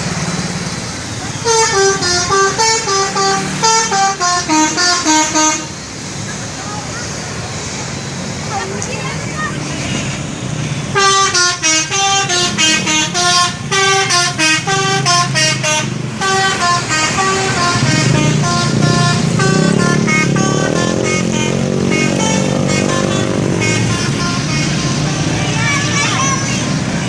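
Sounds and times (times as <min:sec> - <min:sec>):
musical bus horn playing: 0:01.3 - 0:05.8, 0:10.9 - 0:26.8.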